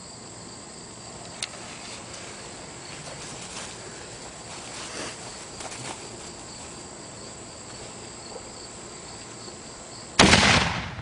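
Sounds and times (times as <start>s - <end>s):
toy cannon boom: 10.2s - 11.0s.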